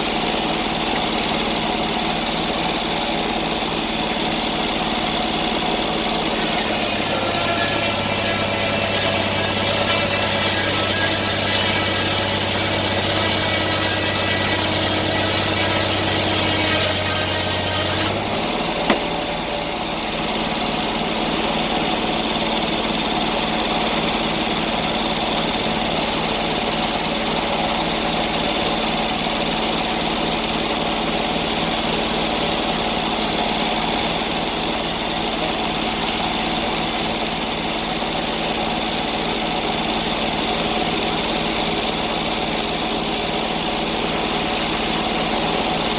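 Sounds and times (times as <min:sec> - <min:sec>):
sawmill engine milling a log: 0:00.0 - 0:45.9
sharp knock: 0:18.8 - 0:19.3.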